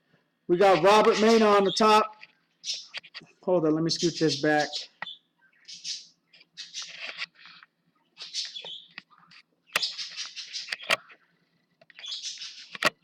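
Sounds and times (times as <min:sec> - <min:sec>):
small bird chirping: 0:00.5 - 0:13.0
sharp clicks: 0:08.3 - 0:13.0.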